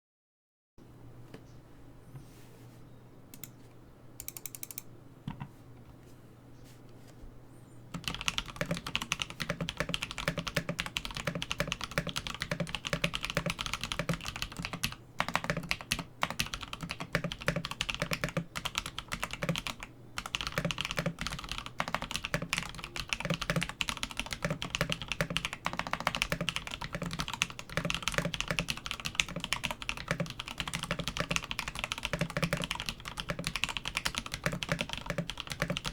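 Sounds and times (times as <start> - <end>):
mechanical keyboard typing: 4.2 - 4.9, 7.9 - 35.9.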